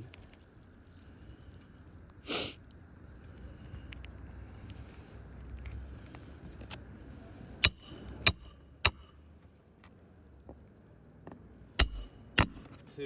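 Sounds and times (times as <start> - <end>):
tool striking nail metallic: 7.6 - 9.4, 11.8 - 13.0.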